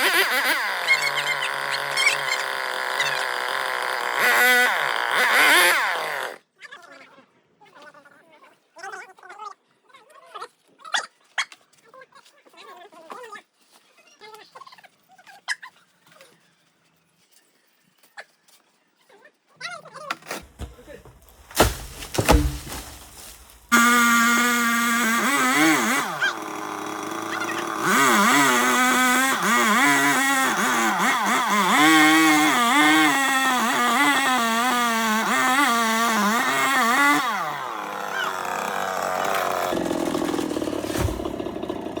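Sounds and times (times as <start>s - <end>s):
chainsaw revving: 0.0s - 6.4s, 20.3s - 42.0s.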